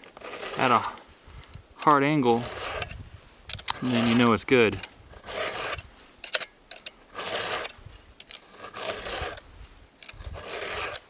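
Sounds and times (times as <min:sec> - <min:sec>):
file rasping on chain: 0:00.2 - 0:00.9, 0:02.3 - 0:03.0, 0:05.1 - 0:05.9, 0:07.1 - 0:07.8, 0:08.5 - 0:09.4, 0:10.1 - 0:11.0
metal clicks: 0:06.2 - 0:07.0.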